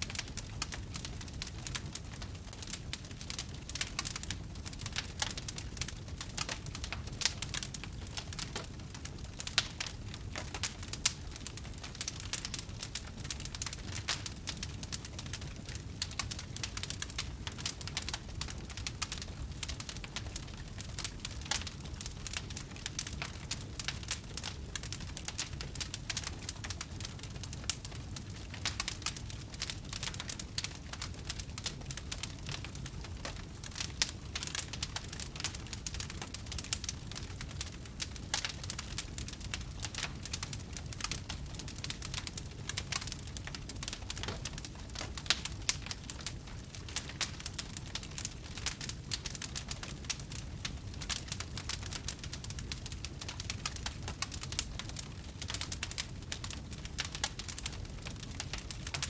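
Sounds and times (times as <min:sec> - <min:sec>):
campfire crackling: 0:00.0 - 0:59.0
low rumble of flames: 0:00.0 - 0:59.0.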